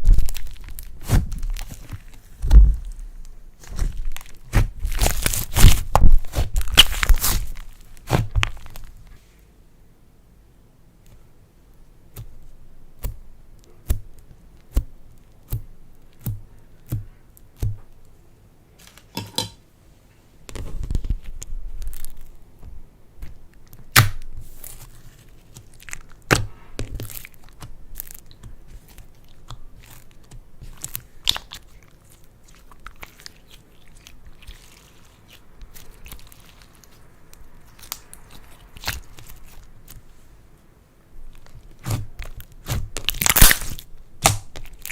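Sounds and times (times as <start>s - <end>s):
slime squelching: 0.0s - 9.1s, 20.8s - 40.2s, 41.2s - 44.9s
sticky slime clicks and pops: 42.6s - 44.9s.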